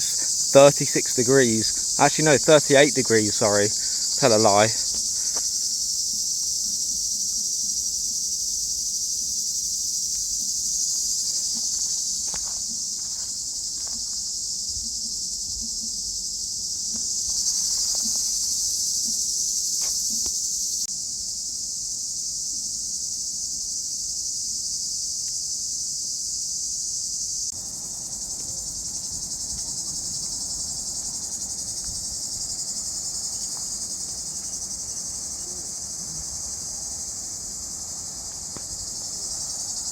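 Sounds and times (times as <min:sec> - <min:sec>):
cicadas shrilling: 0:00.0 - 0:39.9.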